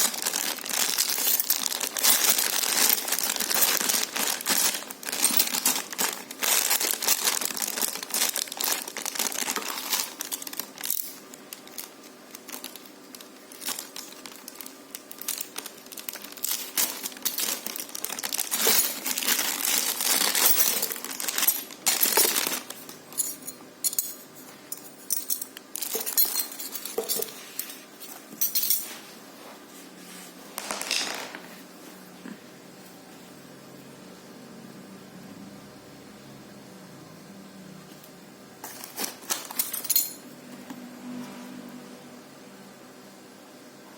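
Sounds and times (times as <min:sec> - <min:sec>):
plastic packaging crinkling: 0:00.0 - 0:23.3, 0:25.6 - 0:28.3, 0:30.5 - 0:31.6, 0:38.6 - 0:40.1.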